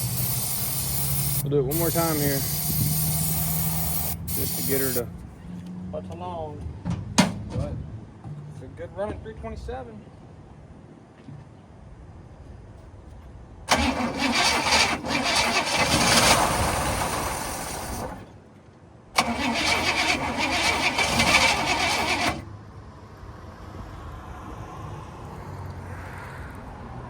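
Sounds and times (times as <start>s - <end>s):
car engine starting and dying: 0.0s - 5.1s, 13.7s - 18.3s, 19.2s - 22.4s.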